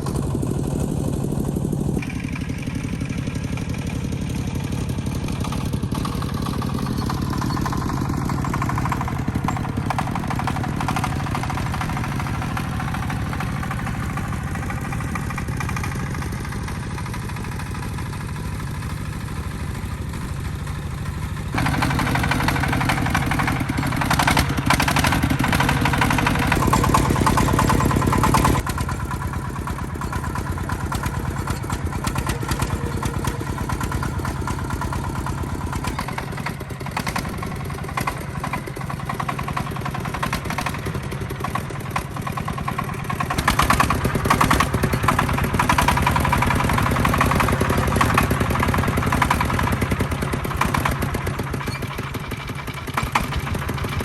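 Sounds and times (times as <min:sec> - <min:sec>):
tractor engine running: 0:00.0 - 0:54.0.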